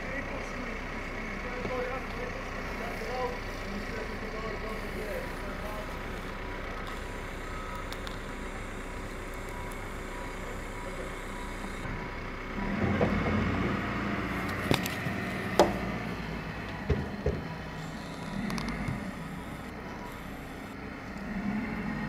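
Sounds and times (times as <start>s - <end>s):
snow plow engine running: 0.0s - 22.0s.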